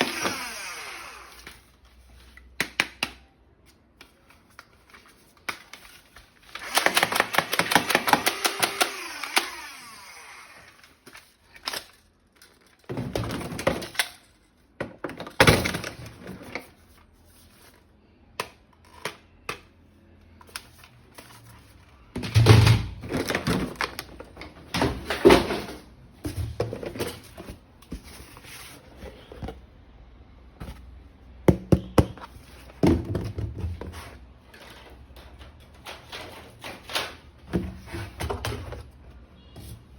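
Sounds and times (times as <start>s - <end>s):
toy gun rapid clicks: 6.6s - 9.7s.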